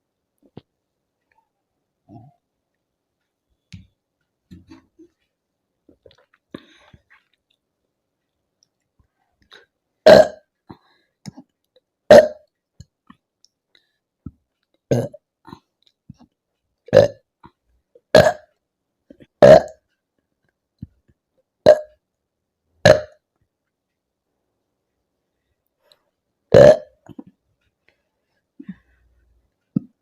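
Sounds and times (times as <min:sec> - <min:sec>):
woman burping: 0:10.0 - 0:10.5, 0:12.1 - 0:12.5, 0:14.9 - 0:15.6, 0:16.9 - 0:17.2, 0:18.1 - 0:18.5, 0:19.4 - 0:19.8, 0:22.8 - 0:23.2, 0:26.5 - 0:27.3.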